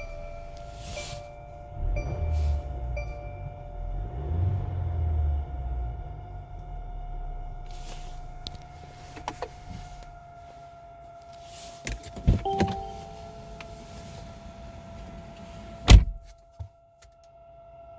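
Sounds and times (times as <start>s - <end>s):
low rumble: 0.0s - 8.8s
clicks and clunks: 11.9s - 13.0s
loud thump: 15.9s - 16.3s.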